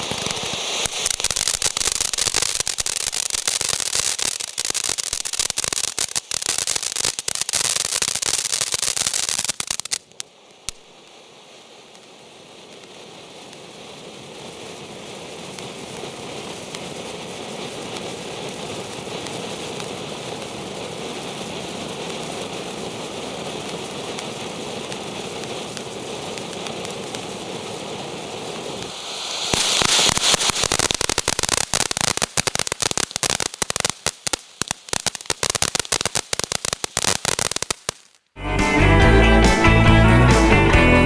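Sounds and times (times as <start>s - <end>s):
fireworks hissing spray: 0.0s - 38.2s
fireworks crackling spray: 0.0s - 38.8s
firework pop: 28.7s - 32.4s.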